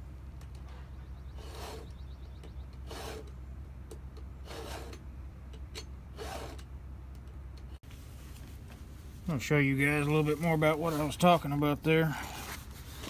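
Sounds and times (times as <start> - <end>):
file rasping on chainsaw chain: 2.9 - 3.3.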